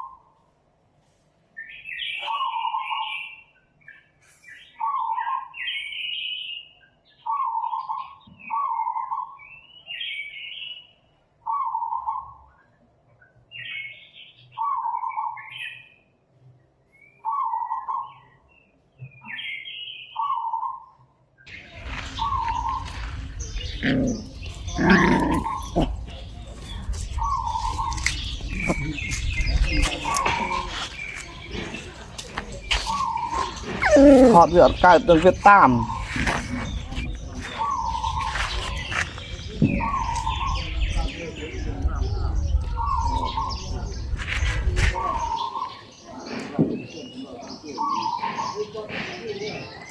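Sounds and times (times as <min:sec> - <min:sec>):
high-pitched animal cries: 0:32.9 - 0:36.0.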